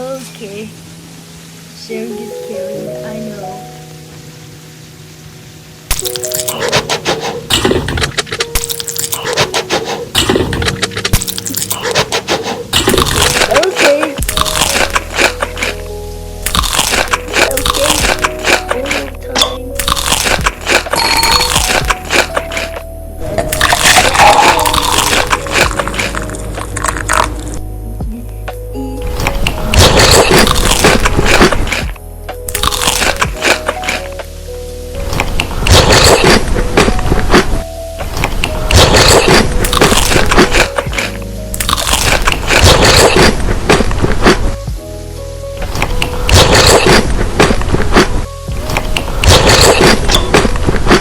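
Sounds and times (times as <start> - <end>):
background music: 0.0 - 51.0
crunchy food chewing: 5.9 - 27.7, 29.2 - 34.2, 35.0 - 44.6, 45.7 - 51.0.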